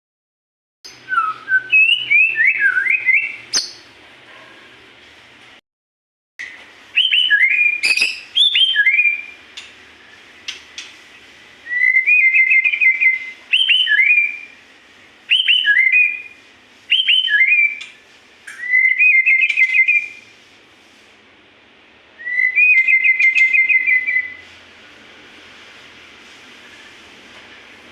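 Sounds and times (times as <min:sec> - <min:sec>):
bird singing whistled notes: 0:00.9 - 0:03.8, 0:07.0 - 0:09.4, 0:11.7 - 0:14.6, 0:15.3 - 0:17.9, 0:18.5 - 0:20.2, 0:22.2 - 0:24.4
sharp click: 0:07.8 - 0:08.2.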